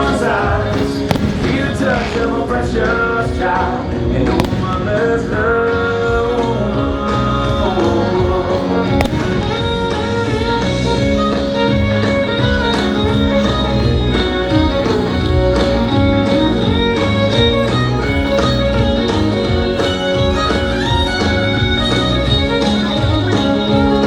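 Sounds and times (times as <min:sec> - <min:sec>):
country music with fiddle and guitar: 0:00.0 - 0:24.0.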